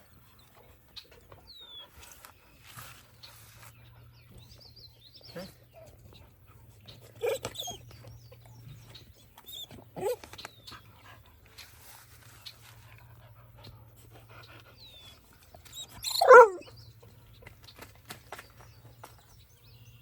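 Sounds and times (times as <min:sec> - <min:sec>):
dog whining: 0:07.2 - 0:07.9, 0:09.5 - 0:10.2, 0:15.7 - 0:16.7.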